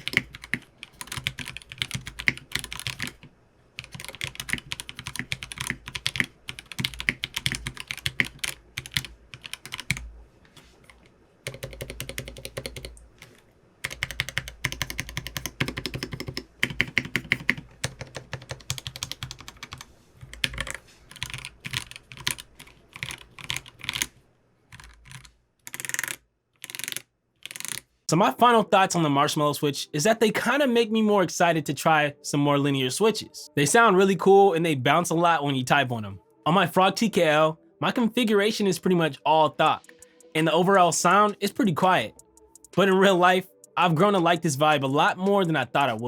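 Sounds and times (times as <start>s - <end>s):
mechanical keyboard typing: 0.0s - 3.2s, 3.8s - 10.1s, 10.9s - 24.1s, 24.7s - 27.9s, 41.2s - 46.0s.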